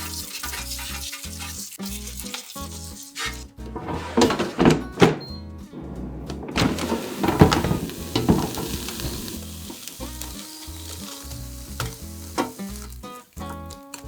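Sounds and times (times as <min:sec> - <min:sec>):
food sizzling: 0:00.0 - 0:03.2, 0:06.6 - 0:14.0.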